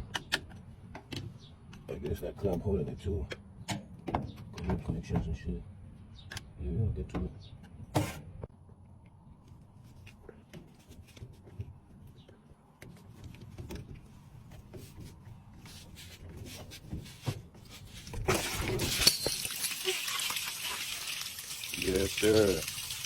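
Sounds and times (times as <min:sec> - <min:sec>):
water gushing out: 0:18.2 - 0:23.0.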